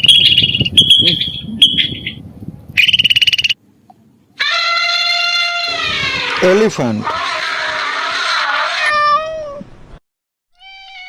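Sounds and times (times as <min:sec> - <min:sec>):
bird rapid pulsed trill: 0:00.0 - 0:02.2, 0:02.8 - 0:03.6
high bird chirps: 0:00.0 - 0:02.2, 0:02.8 - 0:03.6
long steady animal call: 0:04.4 - 0:09.6.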